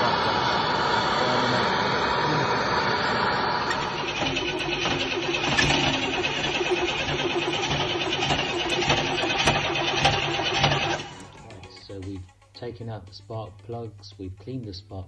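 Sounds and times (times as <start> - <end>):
car engine cranking without starting: 3.7 - 11.9.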